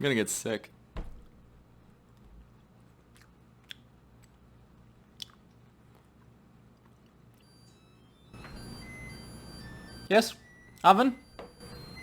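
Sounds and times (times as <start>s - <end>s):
low room hum: 0.0s - 12.0s
chewing a cracker: 2.6s - 7.4s.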